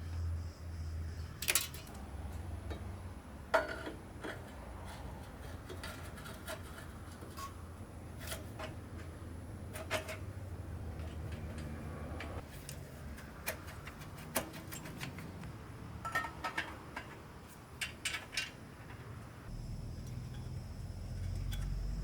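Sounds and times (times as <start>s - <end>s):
hand tools clinking on metal: 16.0s - 19.1s.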